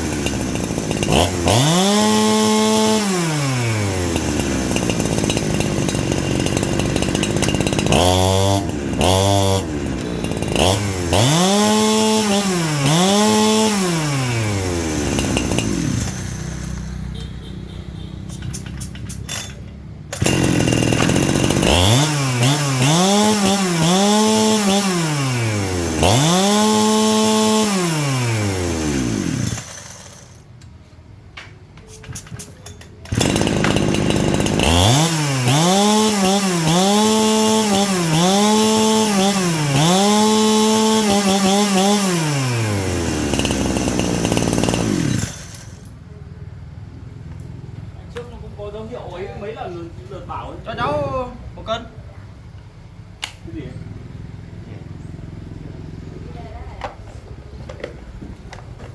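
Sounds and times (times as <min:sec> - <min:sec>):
small engine revving: 0:00.0 - 0:17.1, 0:20.1 - 0:30.4, 0:33.1 - 0:45.9.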